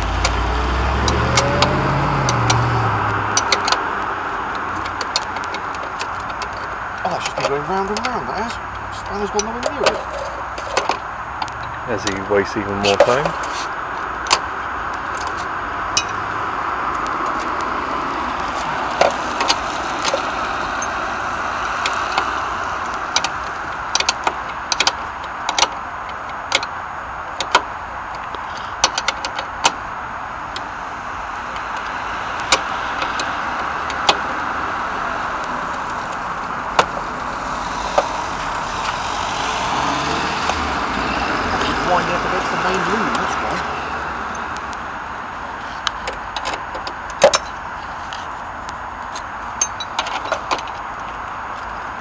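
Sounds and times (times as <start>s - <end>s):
road traffic roar: 0.0s - 52.0s
metal tools clinking: 3.3s - 16.3s, 18.5s - 21.1s, 49.6s - 50.8s.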